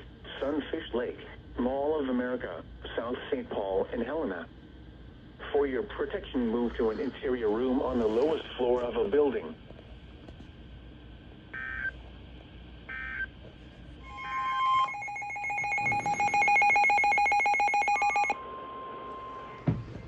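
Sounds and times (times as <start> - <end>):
harsh buzzing alert tone: 14.0 - 18.4
steady tone: 14.0 - 19.6.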